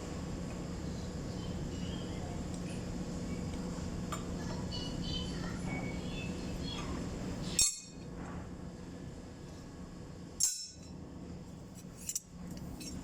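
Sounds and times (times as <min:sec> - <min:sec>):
steady low hum: 0:00.0 - 0:13.0
metal tools clinking: 0:12.0 - 0:13.0.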